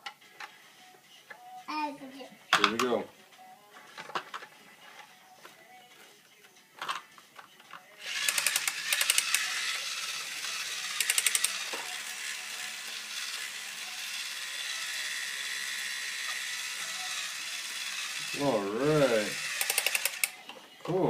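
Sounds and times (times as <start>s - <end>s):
power drill driving screw: 8.0s - 18.5s, 19.1s - 20.4s
rapid ratcheting clicks: 8.1s - 9.5s, 10.8s - 11.8s, 19.4s - 20.4s.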